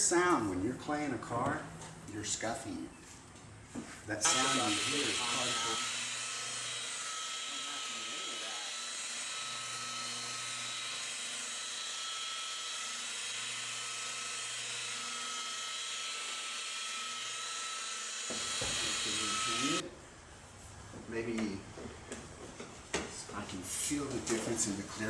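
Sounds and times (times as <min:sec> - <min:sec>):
electric polisher whining: 0:04.3 - 0:19.8.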